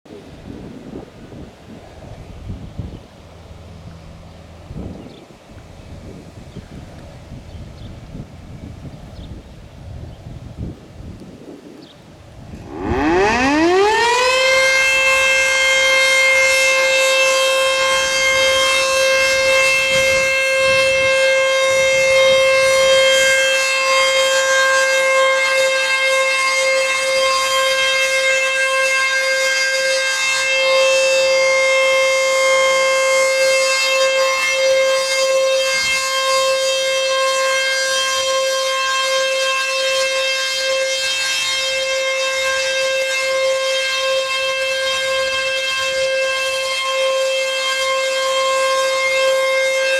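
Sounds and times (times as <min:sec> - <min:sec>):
warning siren rising to high tone: 0:12.4 - 0:49.9.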